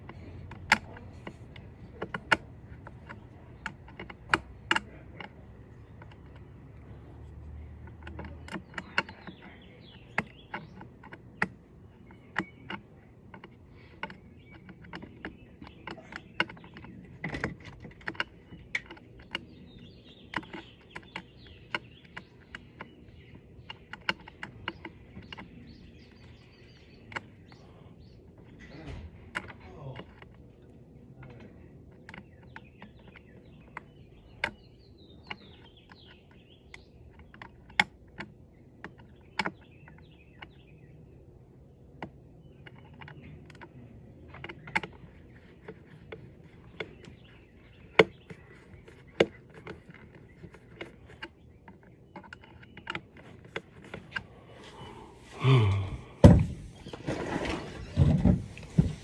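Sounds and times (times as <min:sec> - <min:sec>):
clicks and taps of handling: 0:00.0 - 0:40.6, 0:41.8 - 0:59.0
faint bird chirps: 0:42.4 - 0:57.1
handling thump: 0:54.6 - 0:59.0.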